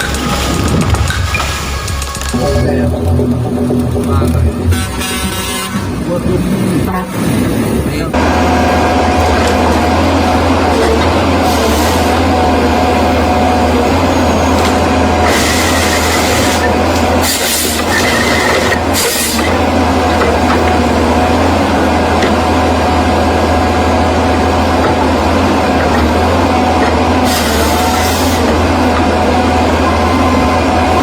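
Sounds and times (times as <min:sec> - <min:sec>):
bulldozer diesel engine droning: 0:00.0 - 0:31.0.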